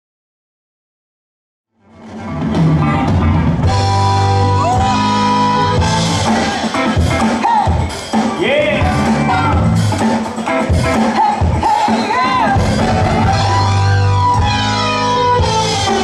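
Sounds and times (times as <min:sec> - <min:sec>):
dj music with heavy bass: 0:02.8 - 0:10.2, 0:10.8 - 0:16.0.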